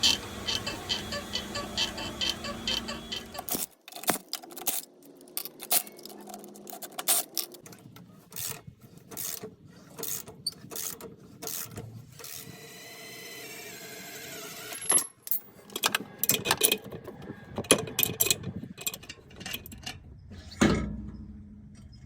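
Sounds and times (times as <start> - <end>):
suspension squeaks and clicks: 0.0 - 3.7, 7.1 - 12.4.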